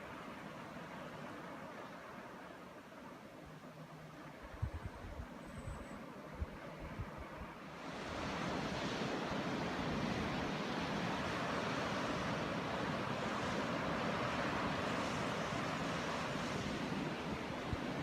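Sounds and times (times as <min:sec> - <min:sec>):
ocean surf washing in: 0:07.4 - 0:18.0.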